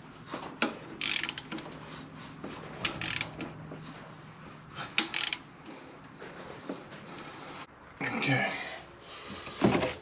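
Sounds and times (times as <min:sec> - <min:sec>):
ratchet wrench clicking: 0:01.0 - 0:01.6, 0:02.8 - 0:03.4, 0:05.0 - 0:05.5.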